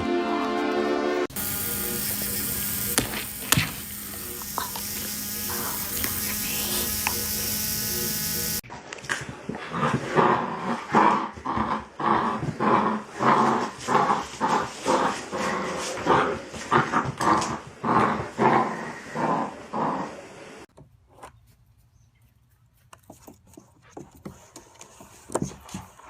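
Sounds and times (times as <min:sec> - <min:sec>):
steady buzz: 0:01.3 - 0:08.6.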